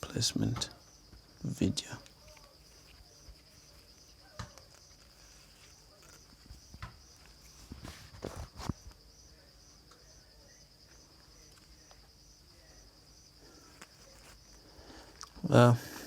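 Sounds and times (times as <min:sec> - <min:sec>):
insect chirping trill: 0:00.0 - 0:16.0
handling knocks and taps: 0:02.0 - 0:08.9.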